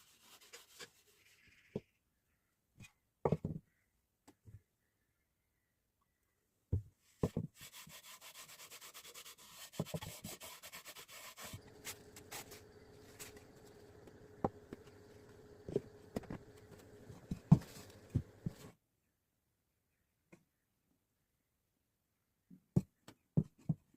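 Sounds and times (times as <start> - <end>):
wood being sanded: 7.6 - 18.7
faint steady hum: 11.5 - 18.7
wood knocking on wood: 11.6 - 18.7.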